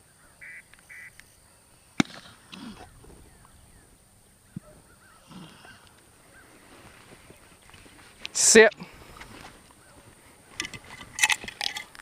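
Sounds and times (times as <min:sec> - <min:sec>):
gunshot: 0:02.0 - 0:02.4.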